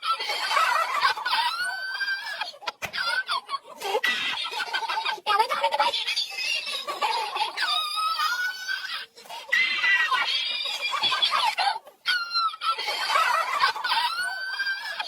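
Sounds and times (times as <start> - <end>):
high-pitched laughing and squealing: 0.0 - 15.0.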